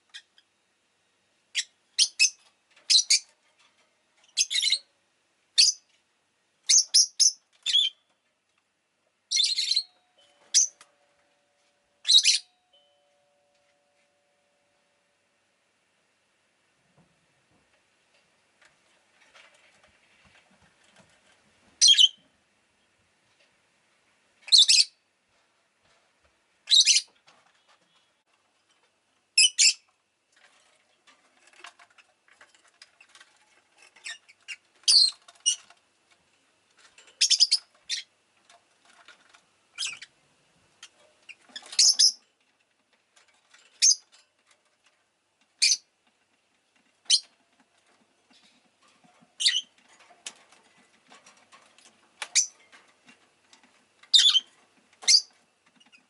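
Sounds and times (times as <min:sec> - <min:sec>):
lovebird chirping: 0:01.5 - 0:03.3, 0:04.4 - 0:04.9, 0:05.6 - 0:05.8, 0:06.7 - 0:08.0, 0:09.3 - 0:10.8, 0:12.0 - 0:13.1, 0:21.8 - 0:22.2, 0:24.5 - 0:25.0, 0:26.7 - 0:27.1, 0:52.3 - 0:52.6, 0:54.1 - 0:54.5, 0:55.1 - 0:55.3
soft bird chatter: 0:31.2 - 0:35.8, 0:47.0 - 0:56.0.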